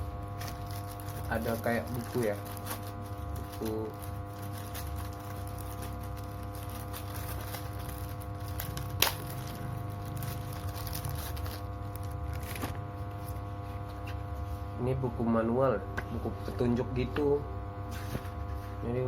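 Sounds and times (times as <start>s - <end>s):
low electrical hum: 0.0s - 19.0s
packaging scraping and ticking: 0.3s - 12.7s.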